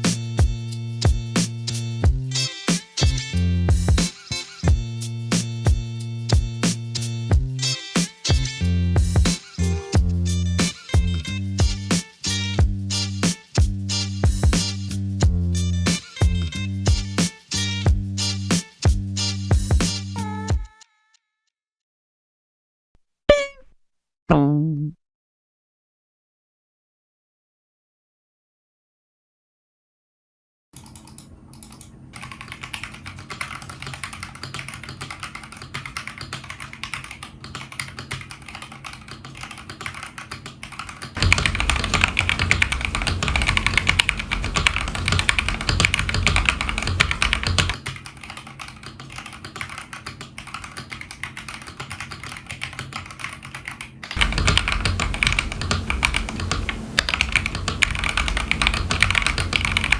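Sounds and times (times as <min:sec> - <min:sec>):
typing on mechanical keyboard: 0:30.8 - 0:59.9.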